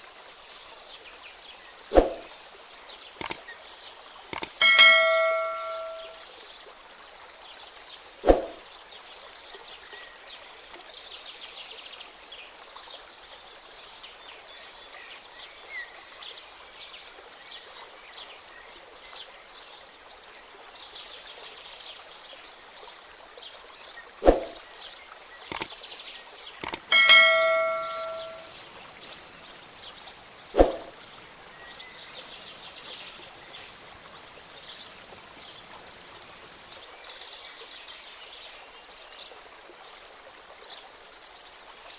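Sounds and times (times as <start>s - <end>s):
sharp clicks: 3.2s - 3.4s, 4.3s - 4.6s, 25.5s - 25.7s, 26.6s - 34.0s
outdoor ambience: 3.2s - 3.5s, 4.2s - 6.2s, 8.2s - 8.7s, 25.5s - 25.8s, 26.4s - 37.1s
bell-like ding: 4.6s - 6.2s, 26.9s - 29.2s.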